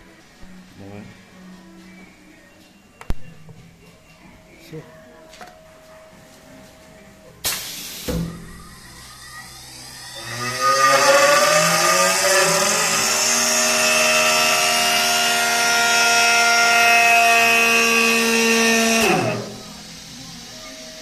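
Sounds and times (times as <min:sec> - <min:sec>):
lathe spindle whining: 0:08.7 - 0:21.0.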